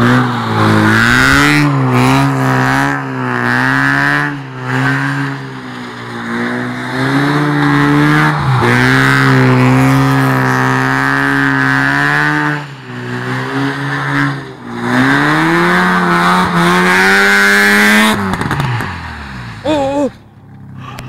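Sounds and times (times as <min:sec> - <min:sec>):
rotary engine revving: 0:00.0 - 0:19.7
person shouting: 0:19.6 - 0:20.2.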